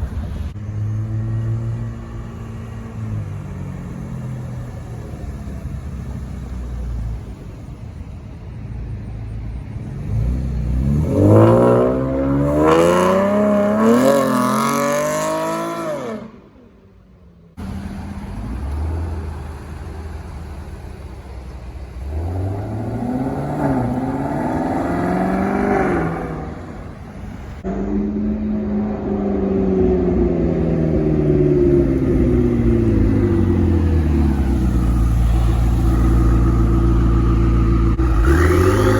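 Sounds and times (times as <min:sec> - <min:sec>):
car engines revving hard: 0:09.6 - 0:16.6, 0:17.5 - 0:38.9.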